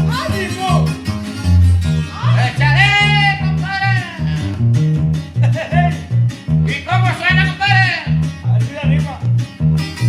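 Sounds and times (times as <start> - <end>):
bass alternating two notes: 0.0 - 10.0
lead melody line: 0.0 - 10.0
plucked guitars: 0.0 - 10.0.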